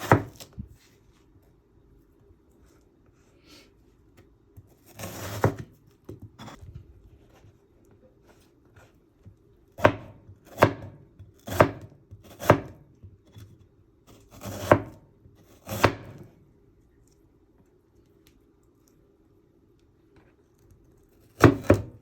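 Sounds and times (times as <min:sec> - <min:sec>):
knife chopping on cutting board: 0:00.0 - 0:00.6, 0:04.8 - 0:06.6, 0:09.8 - 0:13.5, 0:14.1 - 0:16.3, 0:21.4 - 0:22.0.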